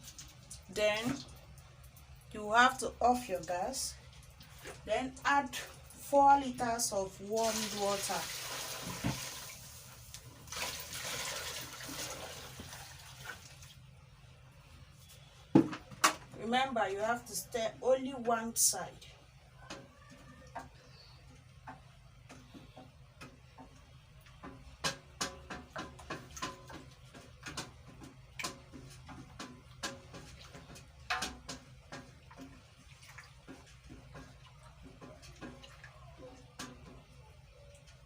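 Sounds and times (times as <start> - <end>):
liquid being stirred: 21.6 - 38.0.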